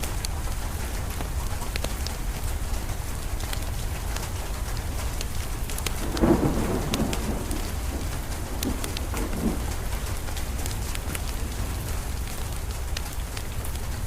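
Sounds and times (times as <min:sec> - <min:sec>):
steady rain: 0:00.0 - 0:14.0
wood fire crackling: 0:00.0 - 0:14.0
thunder rumble: 0:05.4 - 0:13.5.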